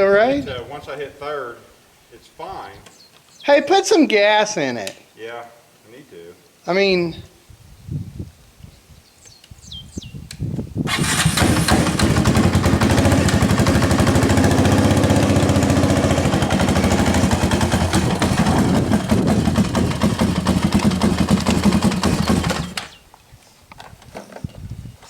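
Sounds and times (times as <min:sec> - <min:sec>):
quad bike engine running: 0:10.9 - 0:23.0.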